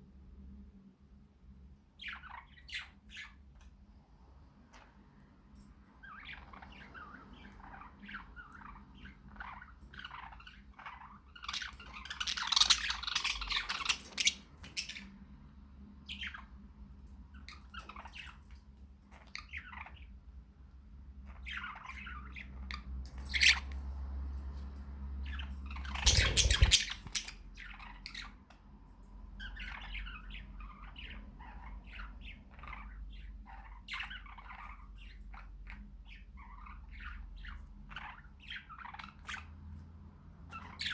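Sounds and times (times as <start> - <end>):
budgies chirping and squawking: 2.0 - 3.4, 6.0 - 15.2, 16.0 - 16.5, 17.3 - 20.2, 21.2 - 23.8, 25.2 - 28.6, 29.4 - 39.6, 40.5 - 40.9.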